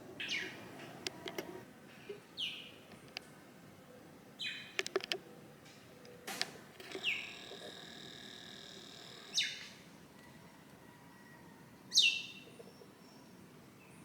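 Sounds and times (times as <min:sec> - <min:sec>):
faint high bird calls: 0:00.1 - 0:03.2, 0:06.0 - 0:13.4.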